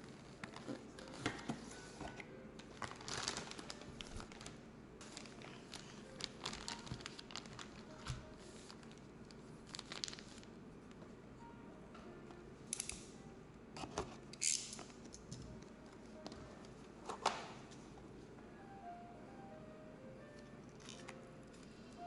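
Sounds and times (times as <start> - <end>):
plastic packaging crinkling: 2.6 - 10.5.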